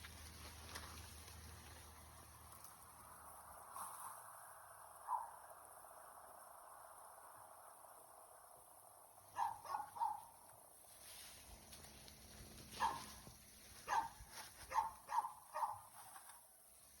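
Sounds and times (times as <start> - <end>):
dog barking: 5.0 - 5.4, 9.3 - 10.3, 12.8 - 13.2, 13.8 - 15.9.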